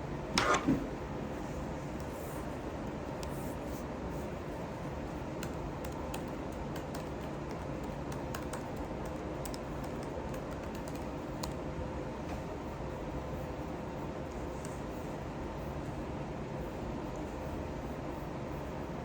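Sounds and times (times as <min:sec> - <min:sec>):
steady background hum: 0:00.0 - 0:19.0
keyboard typing: 0:05.4 - 0:11.6.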